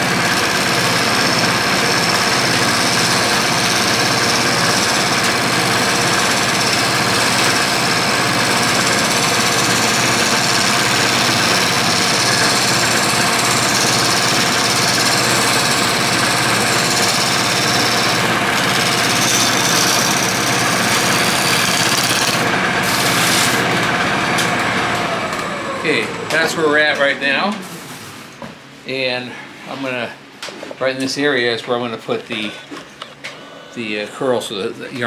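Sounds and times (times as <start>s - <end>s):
lathe motor hum: 0.0s - 27.4s
tool scraping spinning wood: 0.0s - 28.1s.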